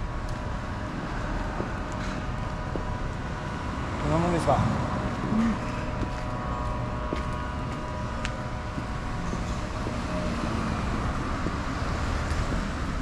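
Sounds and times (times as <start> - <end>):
faint steady tones: 0.0 - 13.0
road traffic noise: 0.0 - 13.0.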